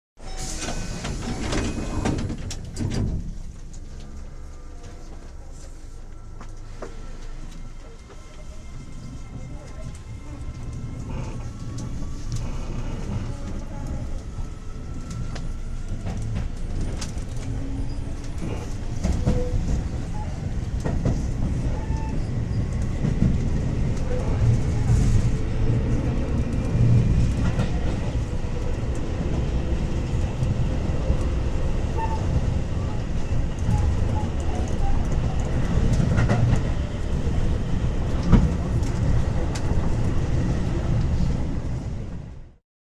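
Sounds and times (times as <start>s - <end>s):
metro train rumble: 0.2s - 42.6s.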